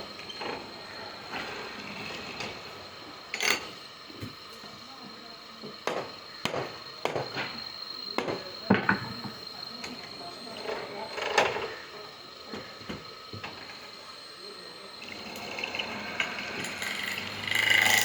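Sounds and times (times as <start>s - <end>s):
steady high whine: 0.0s - 18.0s
sharp knocks and clatter: 5.8s - 7.6s.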